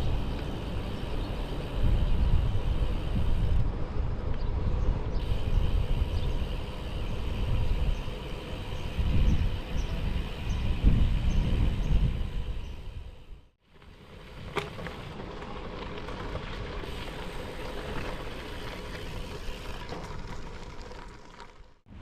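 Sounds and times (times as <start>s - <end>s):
wind buffeting microphone: 0.0s - 13.4s.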